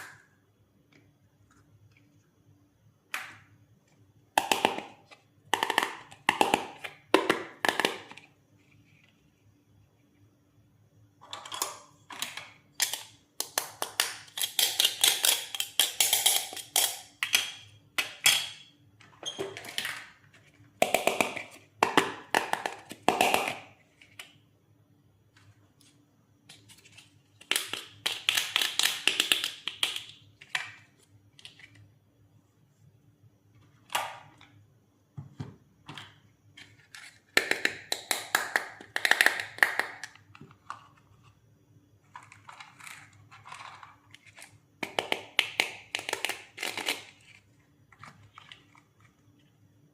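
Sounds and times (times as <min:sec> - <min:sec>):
toy pieces clicking and tapping: 0:04.4 - 0:08.2, 0:11.3 - 0:18.6, 0:27.4 - 0:30.8, 0:36.7 - 0:40.5, 0:42.1 - 0:47.4.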